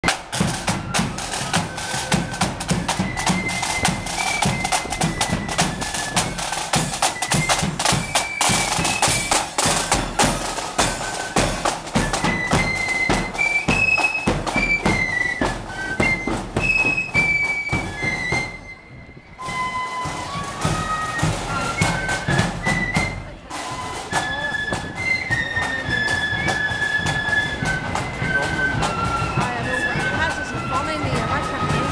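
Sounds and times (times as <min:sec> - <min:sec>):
rapid snare drumming: 0:00.0 - 0:18.4
flutes playing melody: 0:00.0 - 0:31.9.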